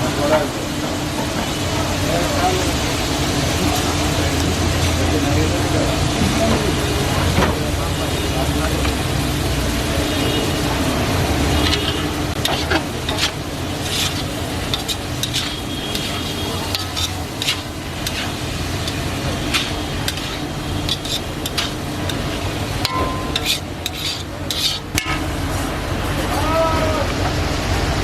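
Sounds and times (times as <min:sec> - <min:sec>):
food sizzling: 0:00.1 - 0:27.0
metal spatula scraping a wok: 0:11.6 - 0:25.4.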